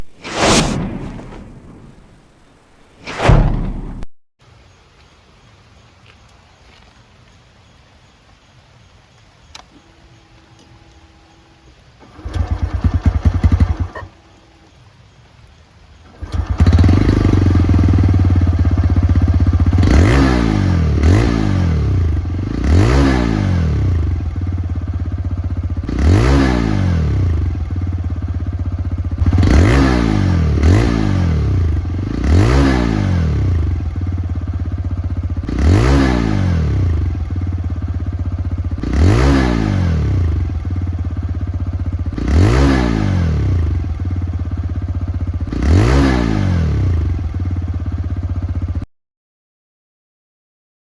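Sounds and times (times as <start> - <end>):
motorcycle engine revving: 12.0 - 14.0, 16.2 - 48.8.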